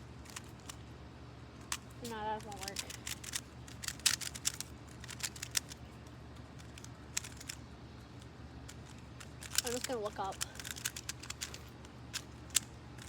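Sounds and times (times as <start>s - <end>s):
plastic puzzle cube clicking: 1.7s - 5.9s, 6.6s - 7.6s, 8.2s - 13.0s.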